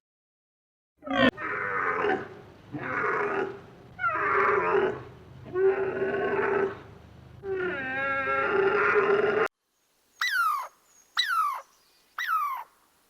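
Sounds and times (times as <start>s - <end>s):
farm animal calling: 10.2s - 12.8s.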